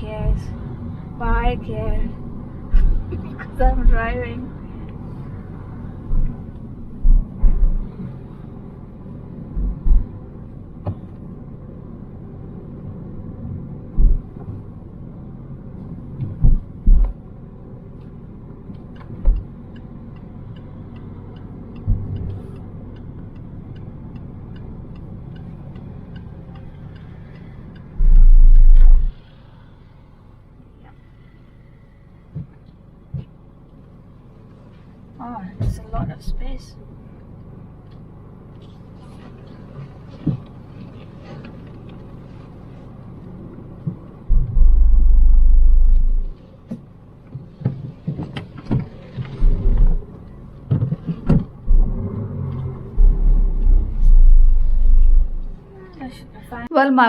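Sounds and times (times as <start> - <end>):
low bumps: 0.0 - 36.8, 38.6 - 55.7
car road and engine rumble: 0.0 - 57.0
loud low thump: 7.0 - 7.9, 14.0 - 14.3, 28.0 - 29.2, 44.3 - 46.4, 49.4 - 50.1, 51.2 - 52.1, 52.9 - 55.6
light ticks: 17.9 - 29.8.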